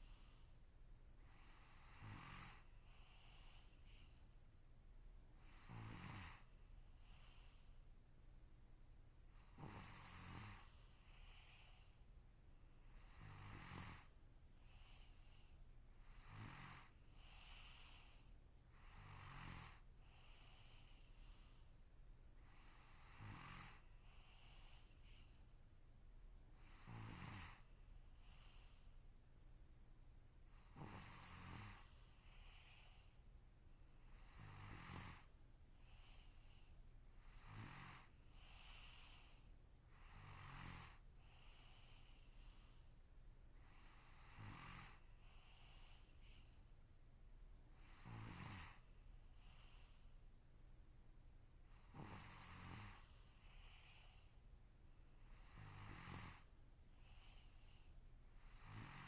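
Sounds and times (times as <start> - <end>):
soft breaths: 0.0 - 59.0
person snoring faintly: 1.2 - 4.2, 5.4 - 7.7, 9.4 - 12.0, 12.8 - 21.6, 22.4 - 25.4, 26.6 - 28.9, 30.5 - 33.2, 34.1 - 42.8, 43.6 - 46.6, 47.8 - 50.1, 51.7 - 54.4, 55.2 - 59.0.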